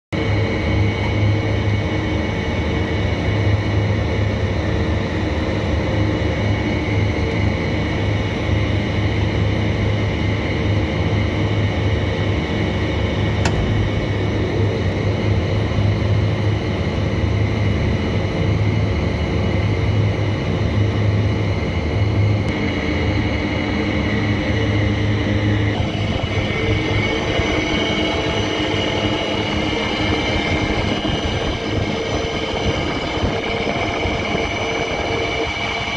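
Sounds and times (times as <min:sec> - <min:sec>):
chiller machine drone: 0:00.2 - 0:35.9
high whining tones: 0:13.3 - 0:15.9
sharp click: 0:13.4 - 0:14.3.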